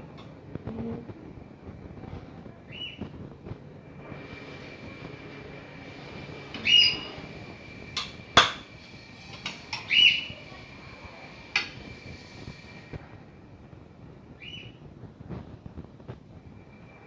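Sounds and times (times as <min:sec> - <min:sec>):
machine high whine: 0:02.6 - 0:13.0.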